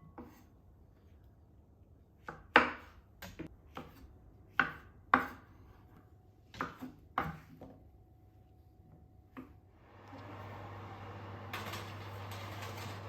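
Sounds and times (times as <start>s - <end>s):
knife chopping on cutting board: 2.2s - 5.5s, 6.6s - 7.6s.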